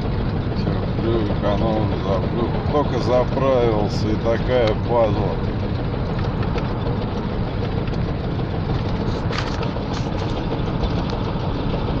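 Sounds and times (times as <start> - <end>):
faint engine ticks: 0.0 - 12.0
petrol engine droning: 0.0 - 12.0.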